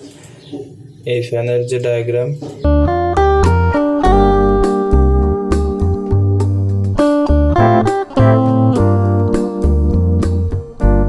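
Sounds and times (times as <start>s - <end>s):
plucked guitar-like notes: 2.6s - 11.0s
steady bass line: 2.7s - 11.0s.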